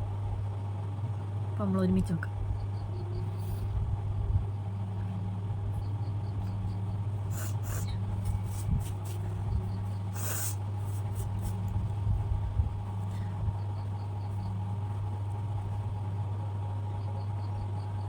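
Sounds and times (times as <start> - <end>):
steady low hum: 0.0 - 18.0
person sniffing sharply: 7.3 - 7.9, 10.1 - 10.6.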